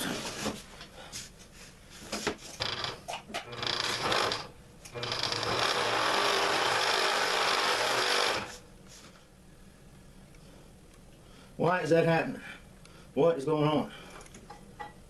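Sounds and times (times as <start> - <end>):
scroll saw running: 3.5 - 8.6.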